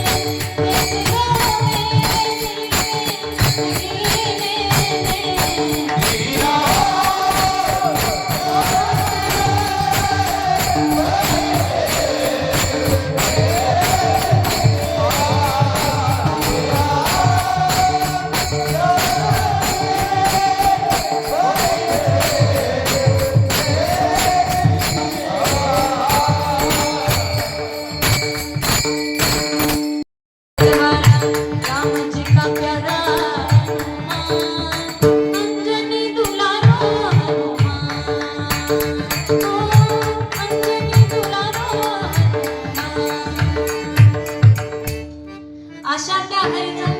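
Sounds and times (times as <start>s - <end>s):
hand drum beat: 0.0s - 29.8s
metallic jingling percussion: 0.0s - 30.0s, 30.6s - 45.1s.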